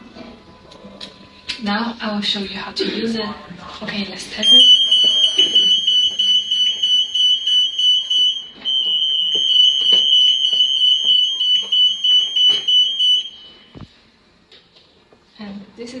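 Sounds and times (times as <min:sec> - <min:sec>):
anti-theft alarm tone: 0:04.4 - 0:13.8.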